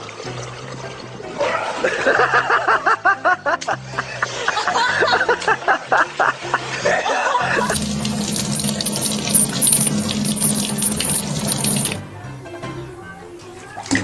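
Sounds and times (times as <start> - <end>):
background music: 0.0 - 14.0
water tap running: 7.6 - 12.0.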